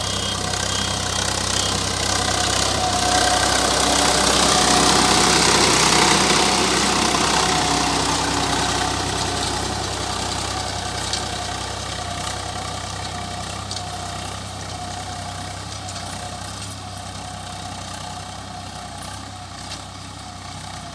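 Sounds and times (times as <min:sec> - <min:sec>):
tractor engine running: 0:00.0 - 0:20.9.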